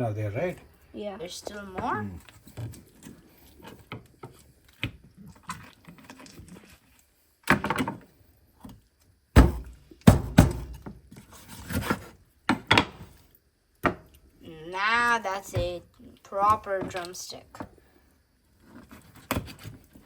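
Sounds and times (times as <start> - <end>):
knife chopping on cutting board: 9.4 - 10.9.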